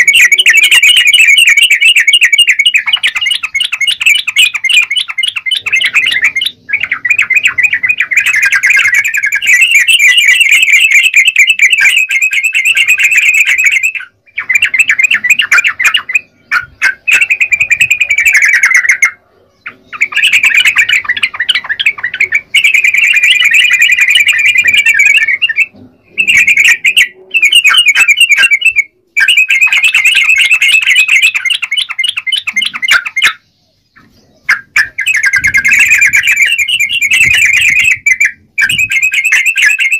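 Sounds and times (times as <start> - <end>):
bird singing rapid chattering notes: 0.0 - 39.9.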